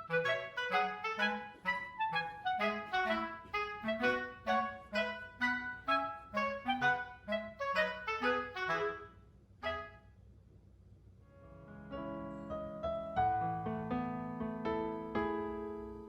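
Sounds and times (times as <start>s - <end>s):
light instrumental tune: 0.0s - 9.0s.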